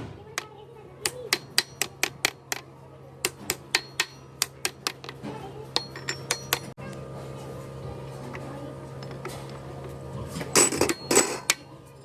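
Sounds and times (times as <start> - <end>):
hammer striking metal: 1.0 - 2.6, 3.2 - 5.2, 5.8 - 6.8.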